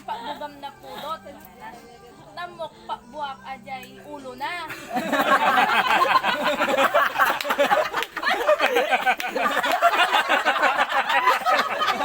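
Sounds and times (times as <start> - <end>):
people laughing and talking: 0.0 - 3.3, 4.3 - 12.0.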